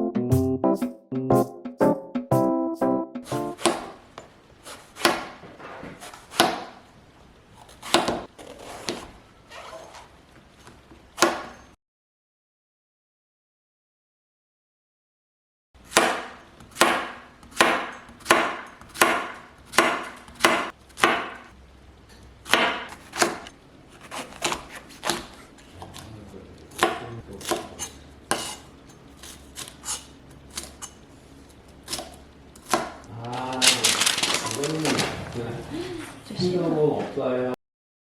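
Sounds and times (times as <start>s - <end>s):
knife chopping on cutting board: 3.2s - 4.0s, 4.6s - 6.8s, 7.6s - 9.1s, 11.2s - 11.6s, 15.9s - 21.5s, 22.4s - 31.0s, 31.8s - 33.0s.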